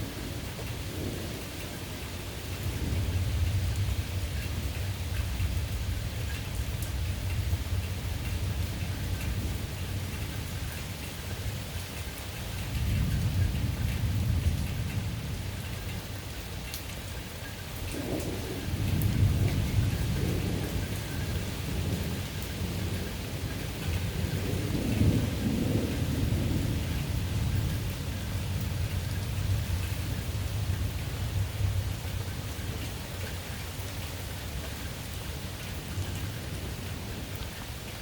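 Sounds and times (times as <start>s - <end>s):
thunder rumbling: 0.0s - 11.5s, 17.8s - 33.6s
steady rain: 0.0s - 38.0s.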